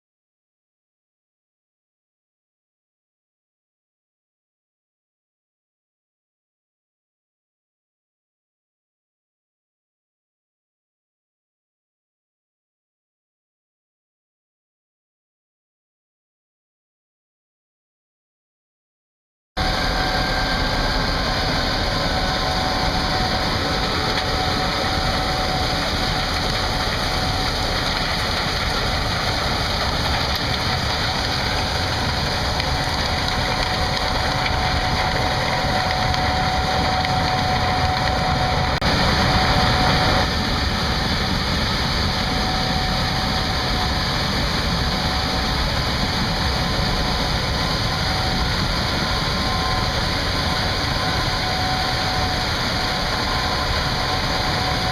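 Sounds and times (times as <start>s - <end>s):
combine harvester running: 19.6s - 54.9s
faint steady machine whine: 19.6s - 54.9s.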